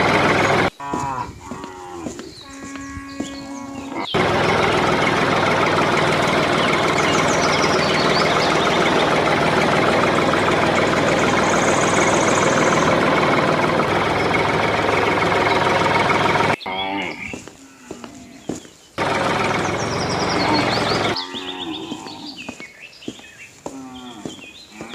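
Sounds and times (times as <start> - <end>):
engine idling with rattle: 0.0 - 0.8, 4.0 - 16.6, 19.0 - 21.2.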